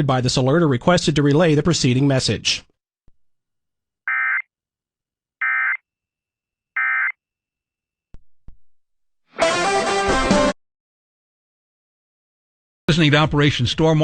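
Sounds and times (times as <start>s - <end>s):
music: 9.3s - 10.6s.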